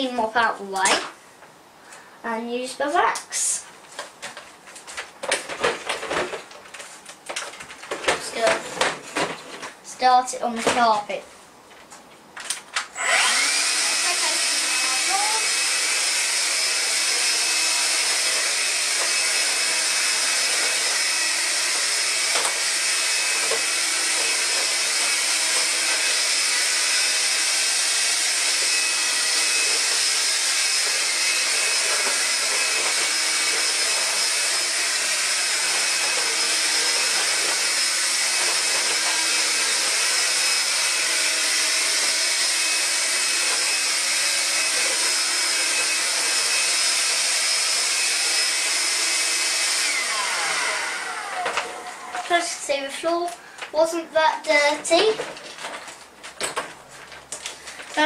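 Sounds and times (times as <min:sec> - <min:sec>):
vacuum cleaner running: 0:13.0 - 0:55.8.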